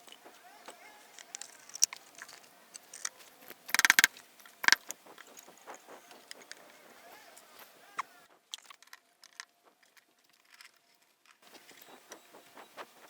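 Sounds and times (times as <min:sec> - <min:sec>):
small parts clicking: 0:01.2 - 0:05.0
short rapid rattle: 0:03.7 - 0:04.8
sharp click: 0:03.8 - 0:04.8.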